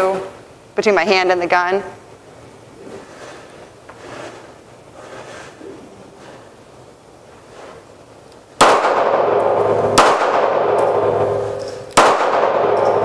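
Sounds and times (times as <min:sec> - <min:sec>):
handgun shots echoing: 0:08.6 - 0:13.0.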